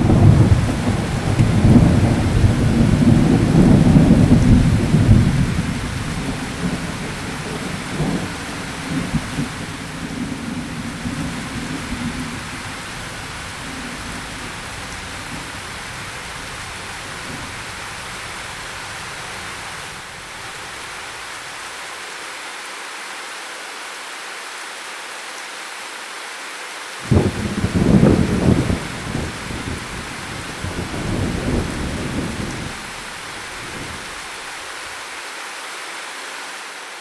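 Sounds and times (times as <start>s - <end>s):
thunder rumbling: 0.0s - 21.0s, 27.1s - 34.9s
steady rain falling: 0.0s - 37.0s.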